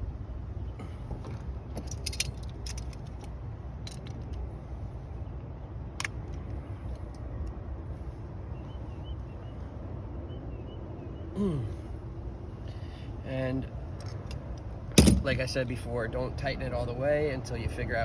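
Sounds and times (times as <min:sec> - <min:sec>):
metallic clicks of parts handled: 0:01.2 - 0:04.5, 0:14.0 - 0:15.3.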